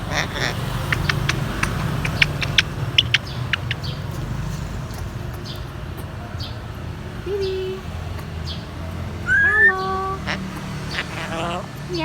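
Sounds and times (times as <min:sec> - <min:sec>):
parrot chirps: 0:00.1 - 0:04.1, 0:09.3 - 0:11.8
parrot clicking: 0:00.2 - 0:04.3.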